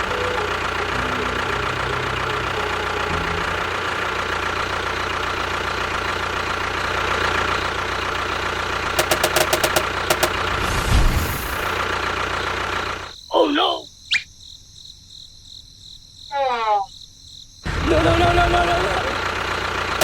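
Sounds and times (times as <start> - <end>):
engine running: 0.0 - 13.2, 17.7 - 20.0
quick sharp clanks: 9.0 - 10.6.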